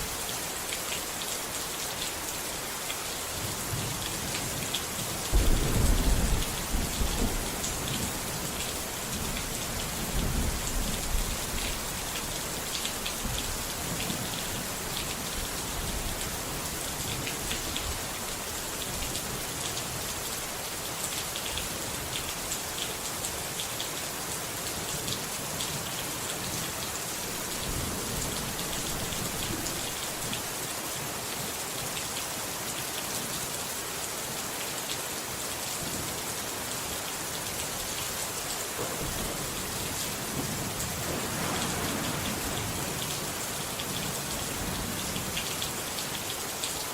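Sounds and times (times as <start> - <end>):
steady rain falling: 0.0 - 46.9
low thunder rumble: 5.4 - 9.5, 38.9 - 45.2.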